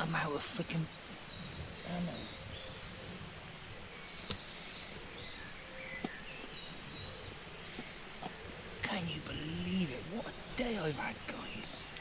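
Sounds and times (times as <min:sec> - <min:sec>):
bird chirps and calls: 0:00.0 - 0:12.0
steady outdoor hiss: 0:00.0 - 0:12.0
faint clicks: 0:11.6 - 0:12.0.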